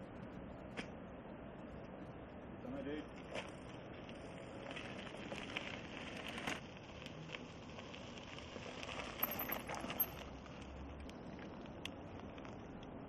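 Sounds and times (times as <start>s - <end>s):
bike tyres on dirt: 0.0s - 13.0s
bike clicks and rattles: 3.2s - 13.0s.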